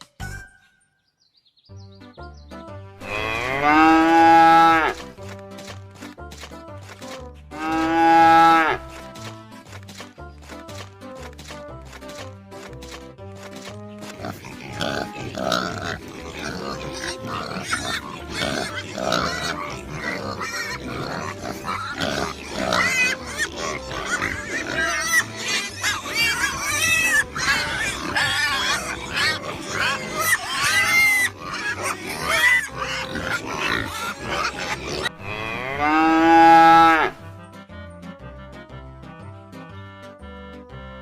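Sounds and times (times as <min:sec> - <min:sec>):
background music: 0:00.0 - 0:41.0
cow mooing: 0:03.0 - 0:05.0, 0:07.5 - 0:08.8, 0:35.2 - 0:37.2
farm animal calls: 0:07.5 - 0:09.0, 0:14.0 - 0:37.3.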